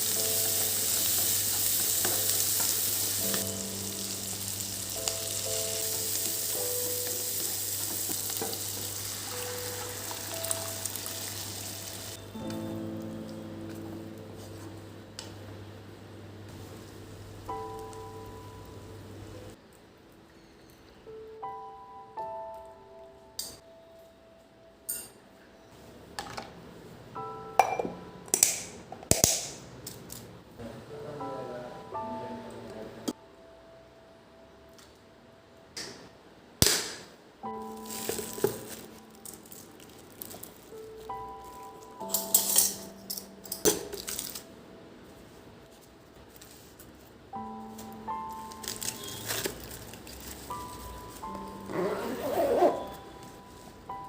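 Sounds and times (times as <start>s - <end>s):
food sizzling in a pan: 0.0s - 12.2s
soft background music: 0.0s - 29.4s, 30.4s - 36.4s, 37.4s - 54.0s
dishes and utensils clinking: 24.9s - 25.2s, 27.6s - 28.0s, 41.6s - 44.4s.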